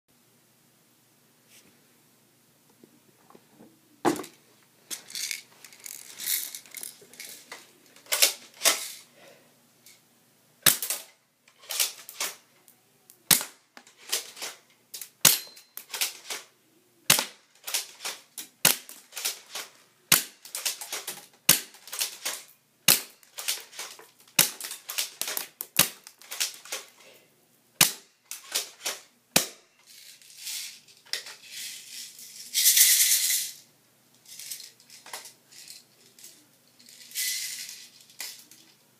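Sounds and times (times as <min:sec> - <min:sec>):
small clicks and rattles: 0:04.9 - 0:09.0, 0:17.6 - 0:22.5, 0:23.1 - 0:27.1, 0:29.8 - 0:38.9
airsoft gun shots: 0:10.6 - 0:11.0, 0:13.3 - 0:13.6.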